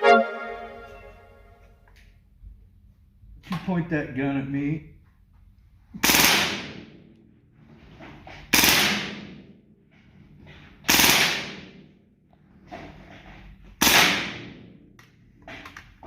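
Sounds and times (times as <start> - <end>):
airgun shots: 6.0 - 6.9, 8.5 - 9.4, 10.9 - 11.8, 13.8 - 14.7.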